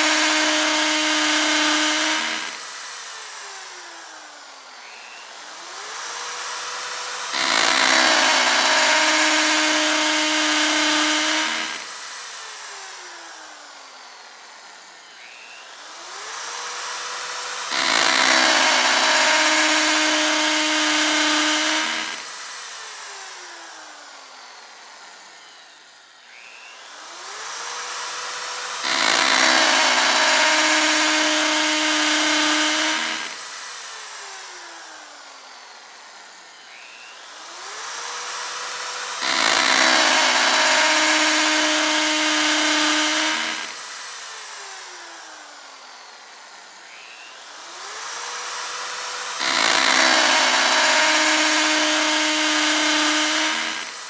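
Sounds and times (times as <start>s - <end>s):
electric drill boring: 0.0s - 54.0s.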